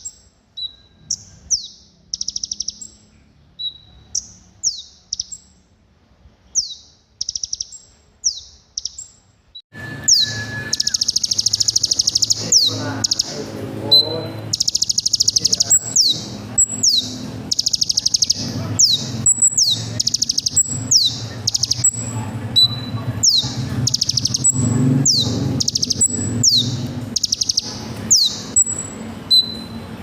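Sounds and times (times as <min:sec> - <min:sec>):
bird trills and whistles: 0:00.0 - 0:05.6, 0:06.5 - 0:29.8.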